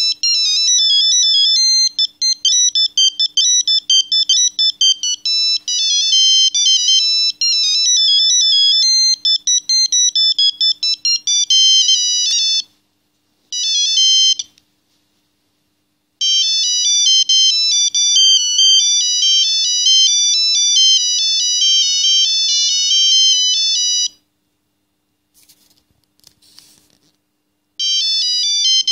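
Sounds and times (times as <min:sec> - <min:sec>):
phone ringtone melody: 0:00.0 - 0:12.7, 0:13.6 - 0:14.5, 0:16.2 - 0:24.2, 0:27.8 - 0:28.9.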